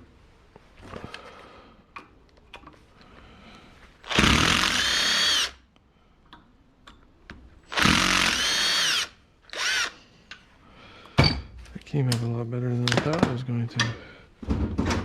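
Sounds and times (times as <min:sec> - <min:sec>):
power drill spinning: 0:04.0 - 0:05.6, 0:07.6 - 0:10.1
small clicks and handling knocks: 0:06.2 - 0:07.5.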